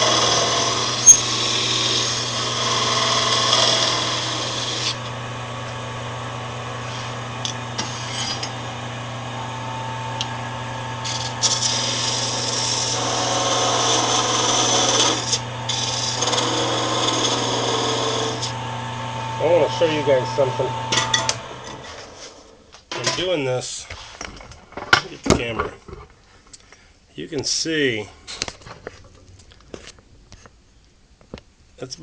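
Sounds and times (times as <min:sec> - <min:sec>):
wood lathe humming: 0:00.0 - 0:22.3
cutting tool scraping wood: 0:07.8 - 0:08.6, 0:11.0 - 0:18.6.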